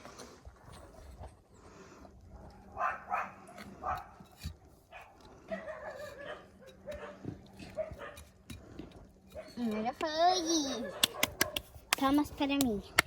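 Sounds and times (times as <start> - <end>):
dog barking: 2.7 - 4.2, 4.9 - 8.2, 10.7 - 11.7.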